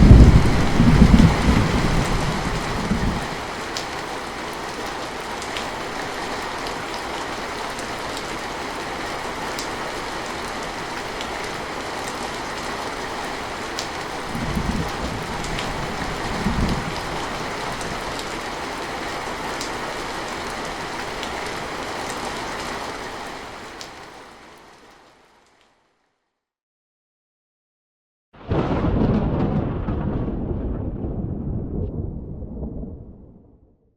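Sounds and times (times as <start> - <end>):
rain falling on a surface: 0.0 - 26.0.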